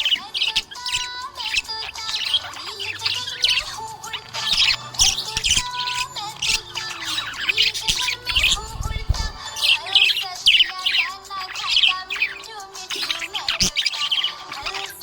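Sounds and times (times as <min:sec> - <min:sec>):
budgerigars chirping and warbling: 0:00.0 - 0:15.0.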